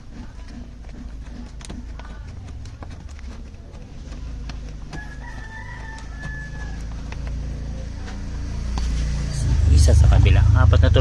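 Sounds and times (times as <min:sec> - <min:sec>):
steady low hum: 0:00.0 - 0:11.0
rooster crowing: 0:04.7 - 0:07.7.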